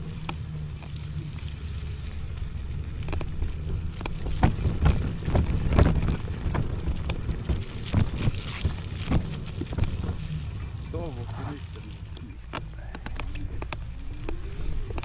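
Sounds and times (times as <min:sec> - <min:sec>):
wind rumbling on microphone: 0:00.0 - 0:15.0
scooter knocking and rattling: 0:02.2 - 0:11.2, 0:12.0 - 0:15.0.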